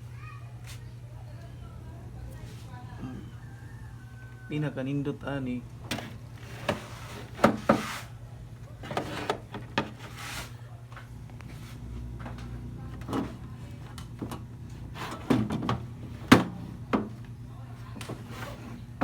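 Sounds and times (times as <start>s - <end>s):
low electrical hum: 0.0s - 19.0s.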